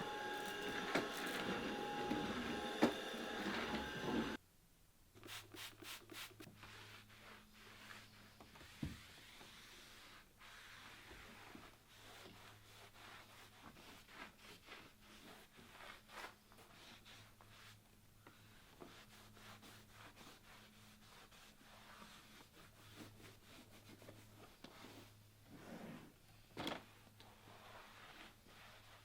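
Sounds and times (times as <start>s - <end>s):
scrubbing by hand: 5.2s - 8.2s.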